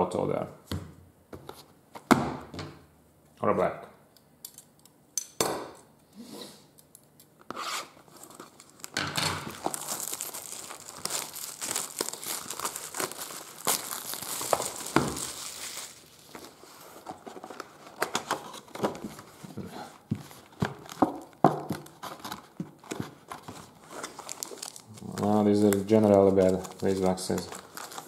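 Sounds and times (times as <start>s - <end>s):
plastic wrapping crinkling and tearing: 8.0s - 19.5s, 20.2s - 28.0s.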